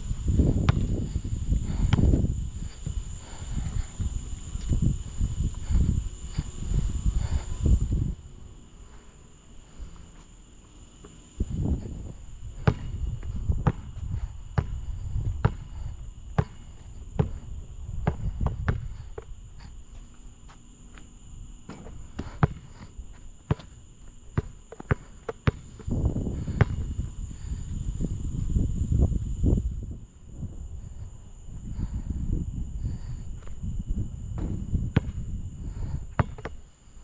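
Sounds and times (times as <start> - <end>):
low rumbling noise: 0.0 - 10.6, 25.9 - 36.2
basketball bouncing on court: 0.6 - 0.9, 12.6 - 13.0, 13.6 - 14.0, 14.6 - 14.8, 15.4 - 15.7, 16.4 - 17.4, 18.0 - 18.9, 21.7 - 22.8, 24.4 - 25.9, 34.4 - 35.2, 36.1 - 36.6.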